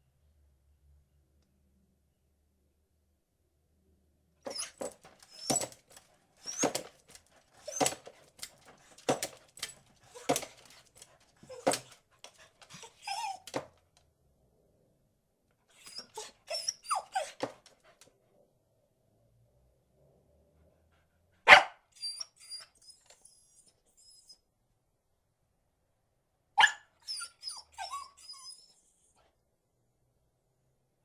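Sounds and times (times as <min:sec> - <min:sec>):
dog barking: 0:21.4 - 0:21.9, 0:26.6 - 0:26.9.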